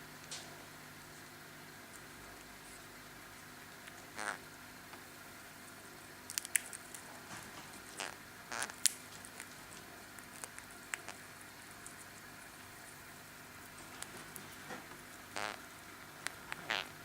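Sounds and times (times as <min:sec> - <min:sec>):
parakeet cracking food with beak: 0:06.3 - 0:07.1, 0:08.0 - 0:11.2.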